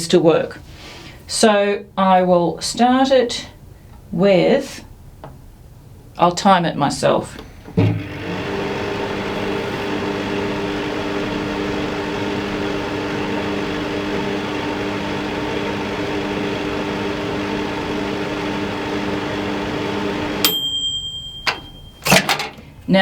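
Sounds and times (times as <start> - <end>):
microwave oven humming: 7.5 - 23.0
microwave beep: 20.3 - 22.4.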